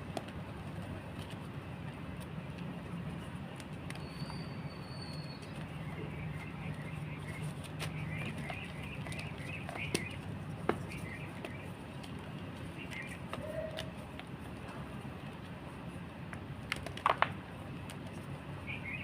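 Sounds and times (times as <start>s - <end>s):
birds chirping: 3.9s - 13.8s, 18.6s - 19.0s.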